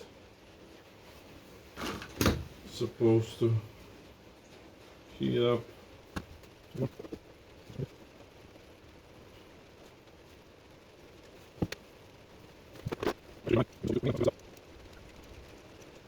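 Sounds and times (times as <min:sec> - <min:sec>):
short low vocal sounds: 0:06.7 - 0:08.0, 0:13.4 - 0:14.3.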